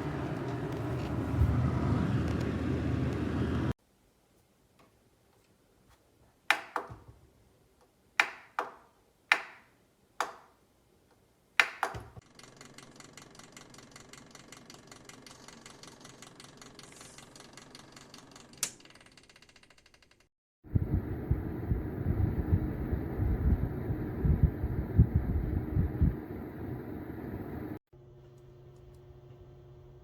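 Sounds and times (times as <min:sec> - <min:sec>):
small motor rattling: 0:12.2 - 0:20.3.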